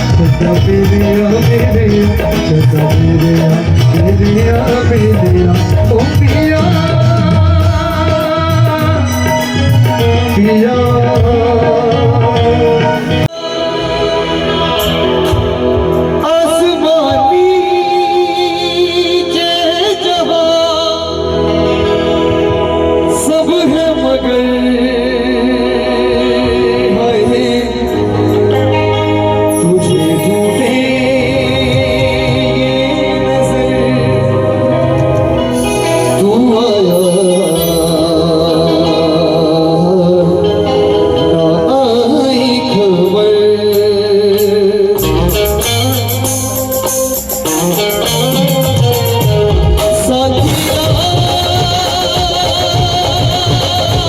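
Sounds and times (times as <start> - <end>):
regular drum beat: 0.0 - 13.3, 44.4 - 54.0
live band slow ballad: 0.0 - 54.0
steady bass: 0.0 - 54.0.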